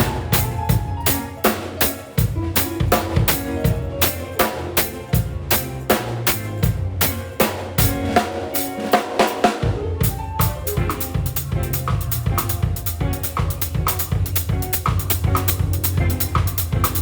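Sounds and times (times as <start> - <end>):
drum kit beat: 0.0 - 17.0
live band playing: 0.0 - 17.0.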